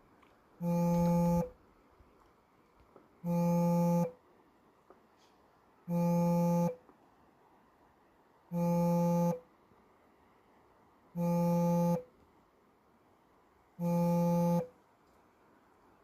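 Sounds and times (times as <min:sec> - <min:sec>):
electronic tone beeps: 0:00.6 - 0:01.5, 0:11.2 - 0:12.0, 0:13.8 - 0:14.7.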